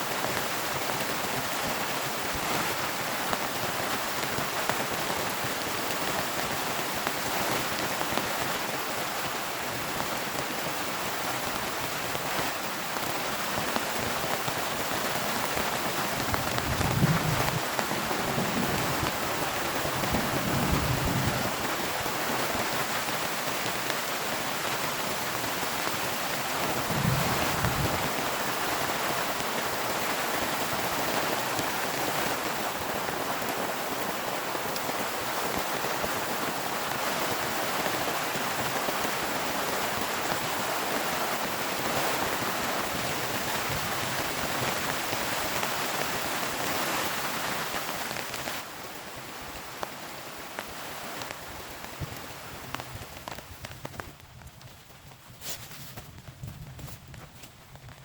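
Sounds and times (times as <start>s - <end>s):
heavy rain pouring: 0.0s - 55.2s
thunder rumbling: 15.6s - 22.0s, 26.4s - 29.5s.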